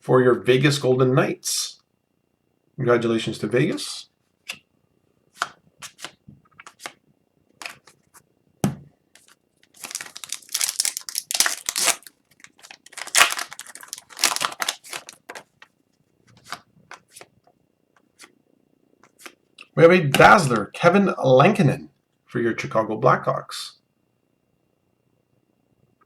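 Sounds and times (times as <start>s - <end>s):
card pack wrapper tearing: 9.2s - 15.7s.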